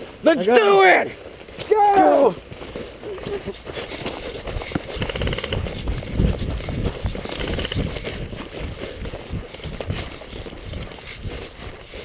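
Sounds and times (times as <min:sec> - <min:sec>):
heavy running footfalls: 0:00.0 - 0:12.0
gear jostling: 0:00.1 - 0:12.0
rapid string of clicks: 0:04.0 - 0:08.2.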